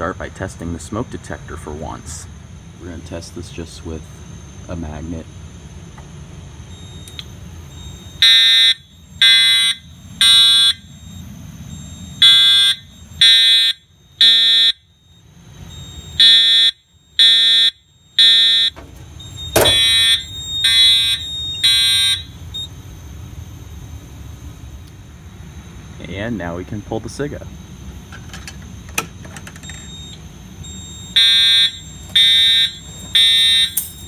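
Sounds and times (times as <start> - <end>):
fire alarm beeps: 4.2 - 34.0.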